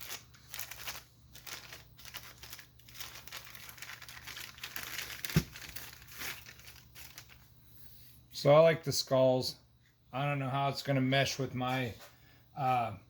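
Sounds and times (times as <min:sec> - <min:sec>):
packaging crinkling: 0:00.0 - 0:07.6.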